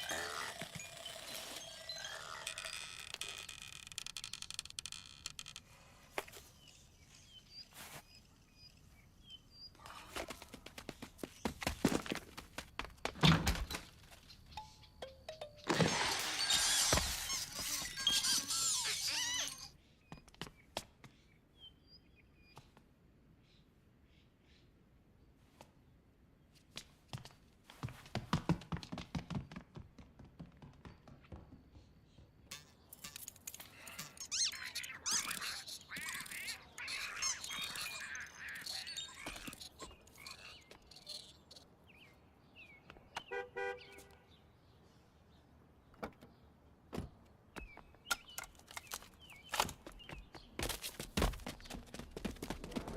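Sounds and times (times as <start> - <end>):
squeaky warbling chirps: 0.0 - 5.1, 14.6 - 19.8, 32.5 - 41.6.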